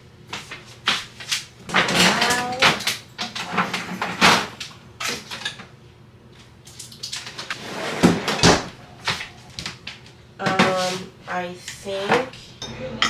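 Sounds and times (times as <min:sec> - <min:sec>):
kitchen items knocking and clattering: 0:01.7 - 0:05.6.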